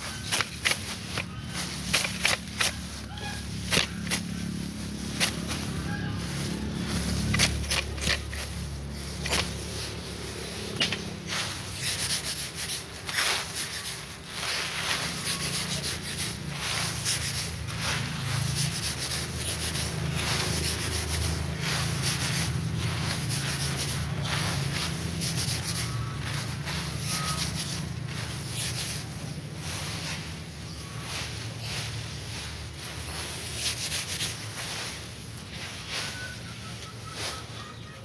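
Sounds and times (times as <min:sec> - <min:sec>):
steady low rumble: 0:00.0 - 0:36.0
straw swishing and rustling: 0:00.0 - 0:38.0.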